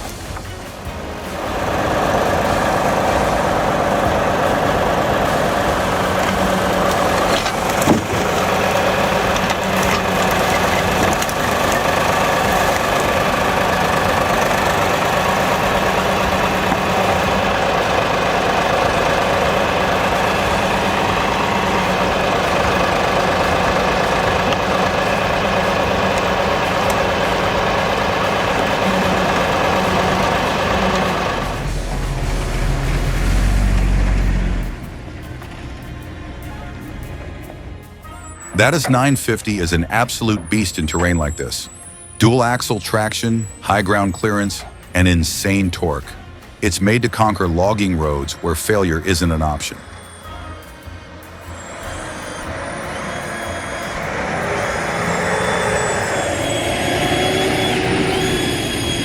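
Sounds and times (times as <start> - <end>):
diesel engine running steadily: 0.0 - 38.8, 50.9 - 59.0.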